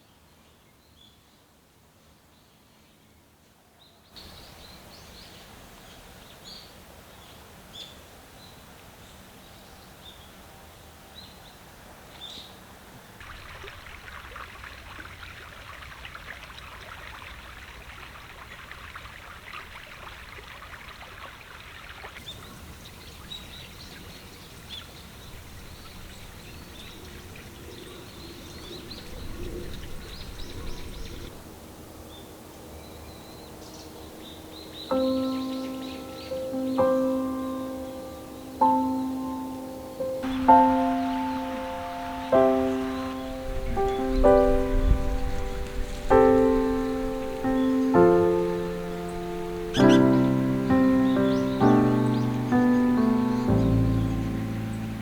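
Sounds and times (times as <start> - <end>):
small birds chirping: 4.0 - 10.3, 22.2 - 31.4, 32.0 - 55.0
steady hiss: 33.5 - 55.0.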